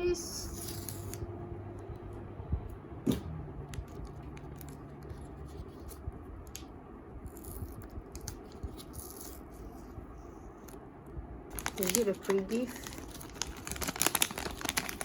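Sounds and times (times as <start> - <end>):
packaging ticks and scrapes: 11.5 - 15.0.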